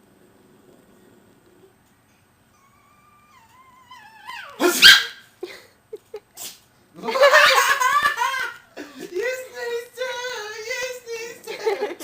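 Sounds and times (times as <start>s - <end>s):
puppy whining: 2.4s - 5.2s
puppy yipping: 2.6s - 5.2s
puppy barking: 4.2s - 5.2s.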